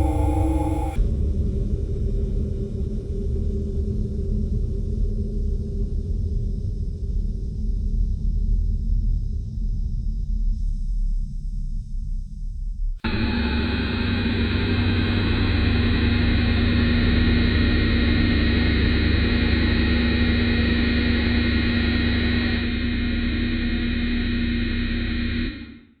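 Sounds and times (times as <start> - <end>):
spaceship engine drone: 0.0 - 1.0, 13.1 - 26.0.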